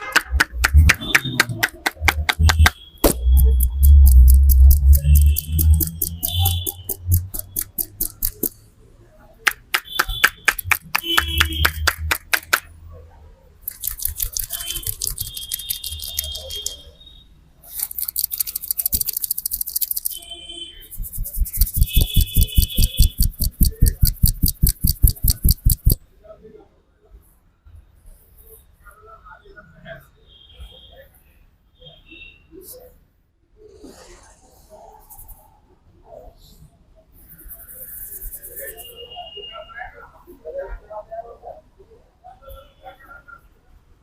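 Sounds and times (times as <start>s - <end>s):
hands tapping and chopping on head: 0.1s - 8.5s, 9.5s - 12.7s, 21.0s - 26.0s.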